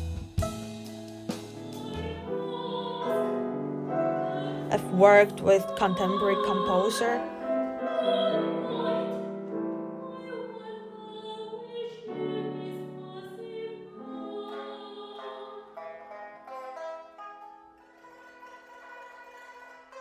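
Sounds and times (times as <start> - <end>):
music of slow held notes: 0.0 - 20.0.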